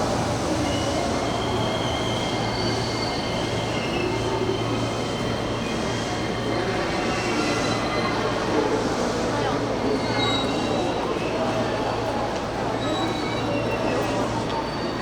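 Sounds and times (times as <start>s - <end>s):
wheels squealing on rails: 0.0s - 15.0s.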